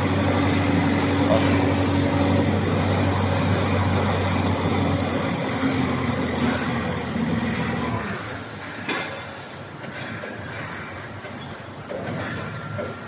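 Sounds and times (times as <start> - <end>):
vehicle engine humming: 0.0 - 9.7.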